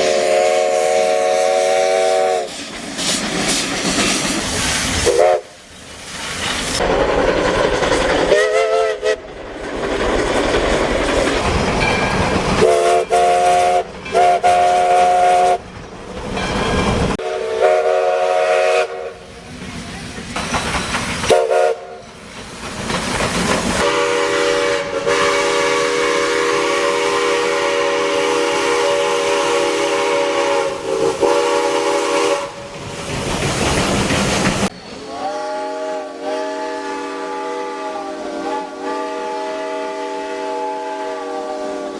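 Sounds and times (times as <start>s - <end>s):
steam locomotive chime whistle: 0.0s - 2.5s, 5.0s - 5.6s, 8.3s - 9.2s, 11.8s - 15.6s, 16.4s - 19.3s, 21.3s - 22.2s, 23.8s - 32.6s, 34.7s - 41.9s
rushing rail and steam noise: 0.0s - 41.9s.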